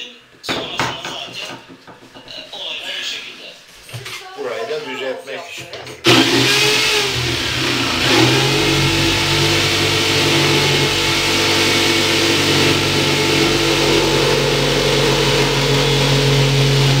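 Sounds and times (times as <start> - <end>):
engine humming steadily: 6.1 - 17.0.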